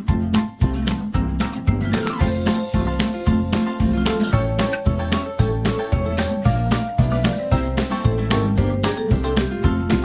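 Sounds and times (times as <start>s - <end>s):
upbeat music with plucked guitar: 0.0s - 10.0s.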